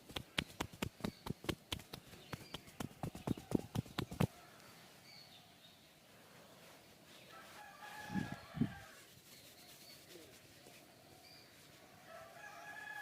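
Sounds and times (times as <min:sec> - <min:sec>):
distant rooster crowing: 0:07.3 - 0:09.1, 0:12.0 - 0:13.0.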